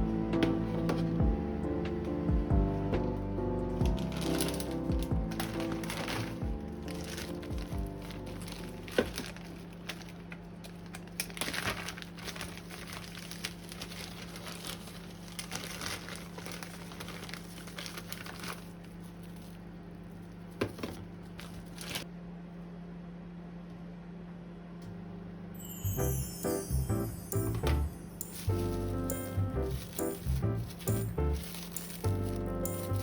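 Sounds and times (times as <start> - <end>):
steady low hum: 0.0 - 10.3
crinkling and rustling: 0.3 - 22.1, 26.2 - 33.0.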